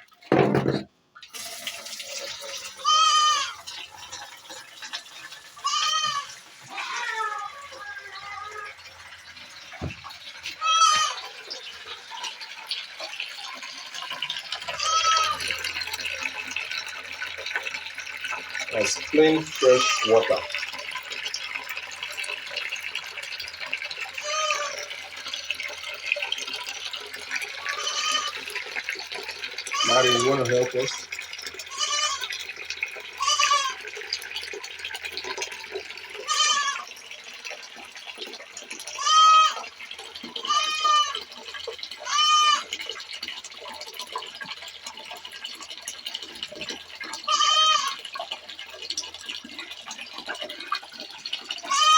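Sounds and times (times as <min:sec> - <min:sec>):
water pouring into a bowl: 0:00.0 - 0:51.9
goat bleating: 0:02.8 - 0:03.6, 0:05.6 - 0:08.8, 0:10.6 - 0:11.2, 0:14.8 - 0:15.4, 0:18.9 - 0:20.4, 0:24.2 - 0:24.8, 0:27.6 - 0:28.4, 0:29.7 - 0:30.5, 0:31.7 - 0:32.3, 0:33.2 - 0:33.8, 0:36.2 - 0:36.9, 0:38.9 - 0:39.6, 0:40.4 - 0:41.2, 0:42.0 - 0:42.6, 0:47.3 - 0:48.0, 0:51.7 - 0:51.9.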